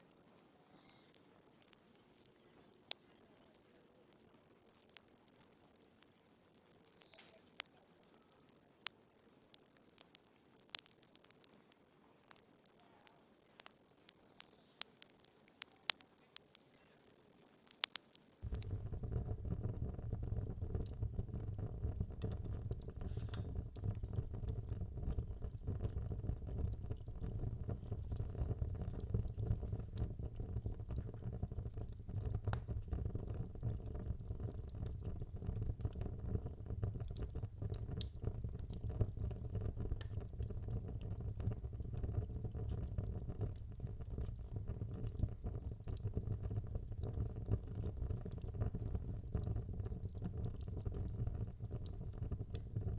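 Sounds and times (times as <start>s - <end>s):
logs crackling and popping: 1.6s - 12.8s, 13.4s - 52.9s
low rumble of flames: 18.4s - 52.9s.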